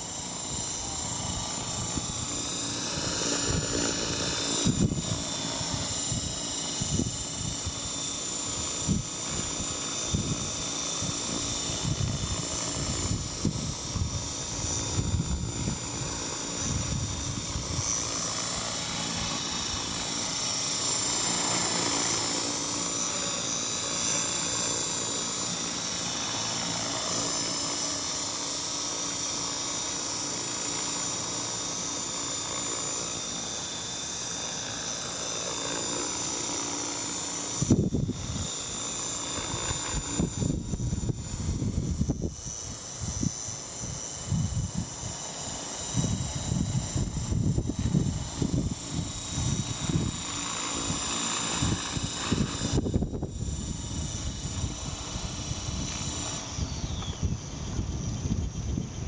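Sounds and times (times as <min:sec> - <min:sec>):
helicopter rotor whine: 0:00.0 - 0:59.0
wind buffeting microphone: 0:08.8 - 0:17.9, 0:37.6 - 0:38.5, 0:39.5 - 0:43.4, 0:45.9 - 0:59.0.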